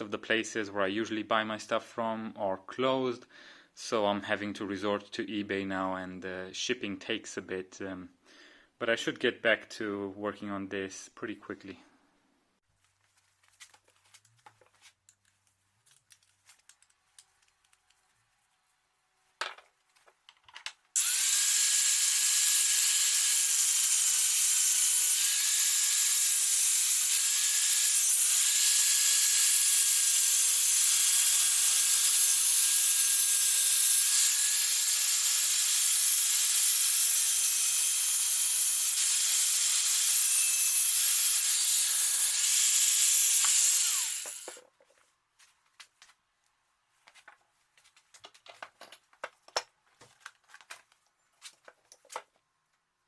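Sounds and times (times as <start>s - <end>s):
grinder cutting steel: 21.0s - 44.6s.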